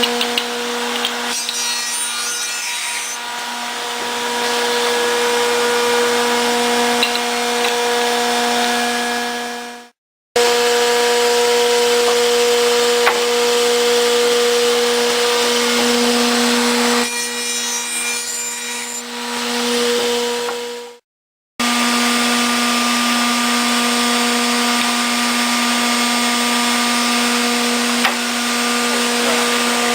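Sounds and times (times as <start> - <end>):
cutters machining wood: 0.0 - 9.2, 10.4 - 20.8, 21.6 - 29.9
spindle motor humming: 10.9 - 19.1.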